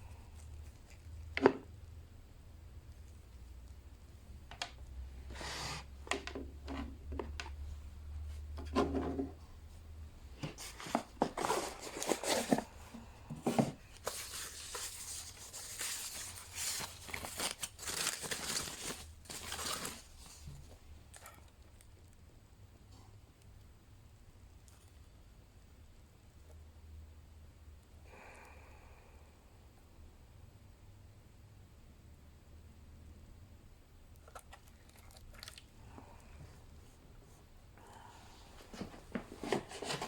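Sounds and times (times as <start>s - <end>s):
paper and plastic rustling: 10.4s - 21.4s, 38.6s - 40.0s.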